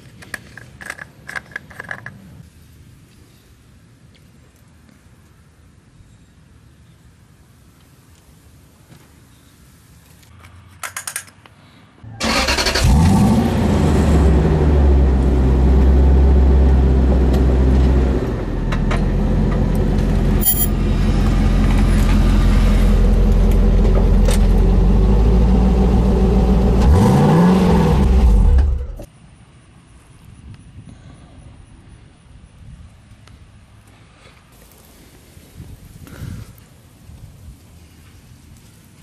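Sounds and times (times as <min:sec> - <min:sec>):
car engine starting and idling: 0:12.1 - 0:29.1.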